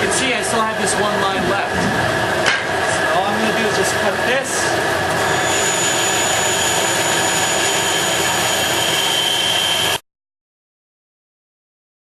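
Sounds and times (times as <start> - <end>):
band saw cutting wood: 4.2 - 10.0.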